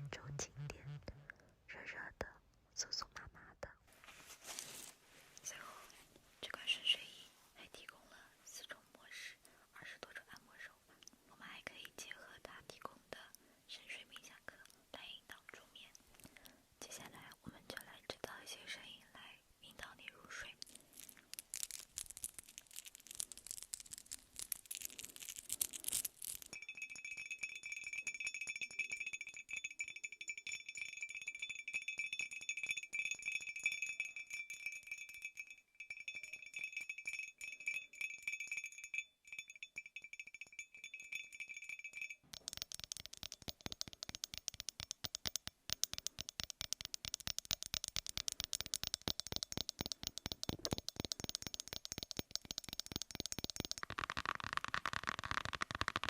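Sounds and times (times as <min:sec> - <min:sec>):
dense crackling: 0:20.8 - 0:26.6, 0:42.3 - 0:56.0
metallic chime-like jingle: 0:26.6 - 0:42.3
fast dense clicking and rattling: 0:42.3 - 0:56.0.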